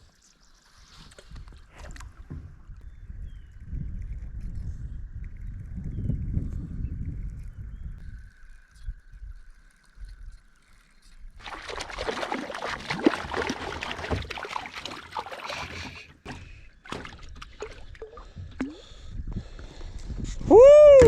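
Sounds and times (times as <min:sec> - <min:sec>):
water splashing beside kayak: 0:11.4 - 0:18.9.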